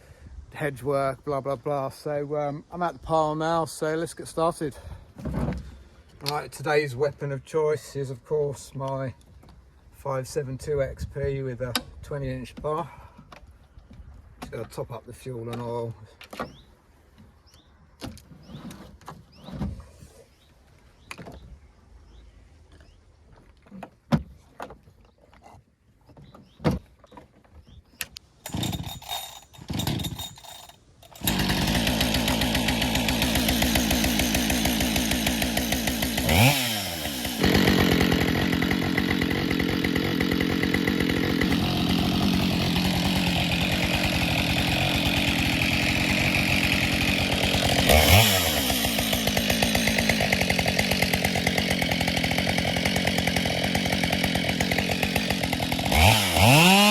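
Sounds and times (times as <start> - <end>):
chainsaw running and revving: 28.5 - 56.9.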